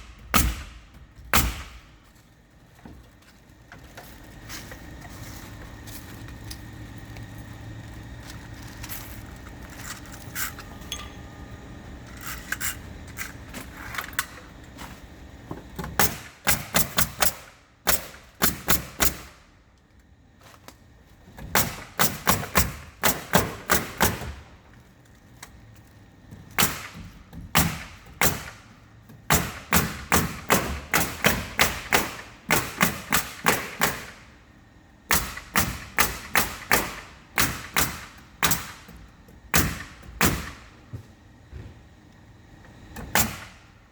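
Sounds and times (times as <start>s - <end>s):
nail gun firing: 0.0s - 2.0s, 15.8s - 19.5s, 21.5s - 24.5s, 26.6s - 28.7s, 29.3s - 34.3s, 35.1s - 40.7s, 43.1s - 43.7s.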